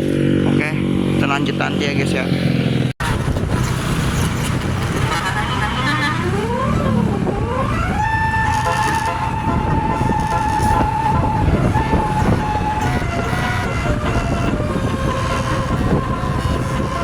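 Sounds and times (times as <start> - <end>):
low engine rumble: 3.0 - 17.0
bus musical horn playing: 5.0 - 17.0.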